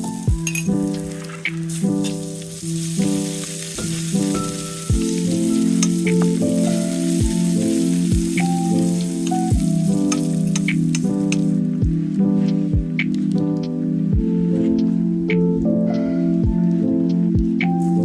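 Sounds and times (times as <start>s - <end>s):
food sizzling in a pan: 0.0s - 11.6s
background music of held notes: 0.0s - 18.0s.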